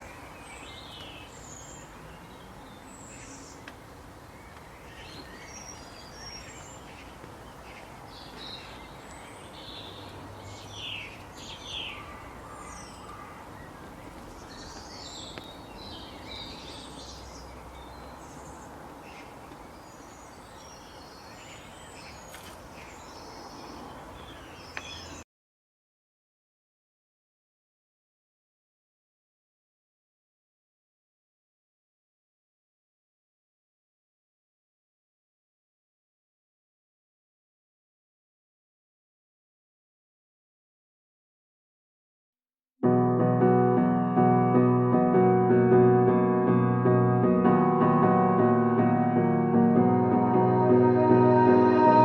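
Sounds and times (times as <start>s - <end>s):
outdoor background hiss: 0.0s - 25.2s
wild birds chirping: 0.0s - 25.2s.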